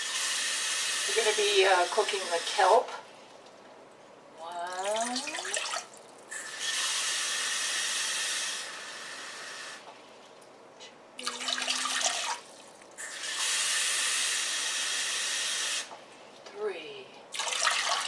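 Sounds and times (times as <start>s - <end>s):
kitchen tap running: 4.6s - 6.4s, 11.2s - 13.4s, 17.3s - 18.0s.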